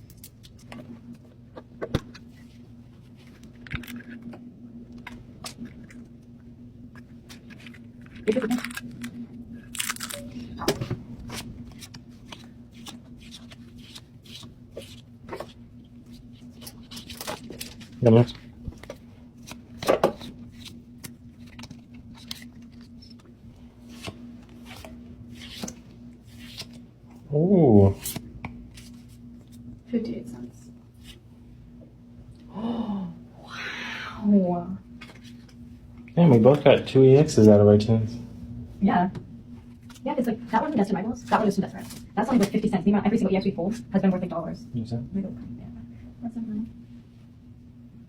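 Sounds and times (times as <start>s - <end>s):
steady low hum: 0.0s - 48.0s
cards rustling: 11.2s - 26.8s.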